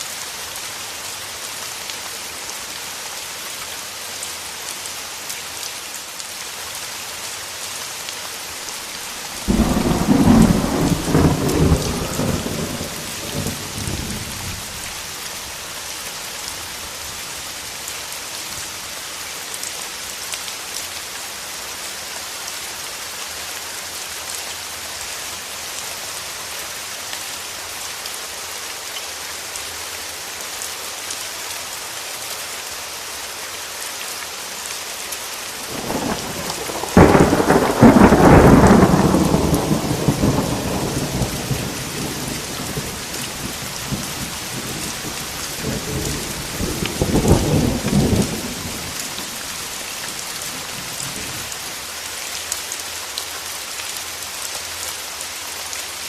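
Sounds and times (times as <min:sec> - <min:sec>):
steady rain falling: 0:00.0 - 0:56.0
thunder rumbling: 0:09.4 - 0:14.9, 0:35.7 - 0:51.4.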